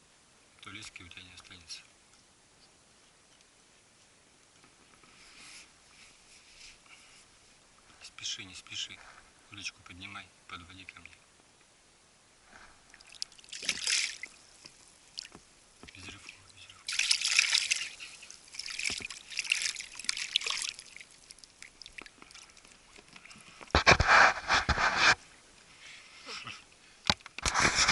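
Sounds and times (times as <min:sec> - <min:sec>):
water splashing beside a boat: 0:12.8 - 0:24.5.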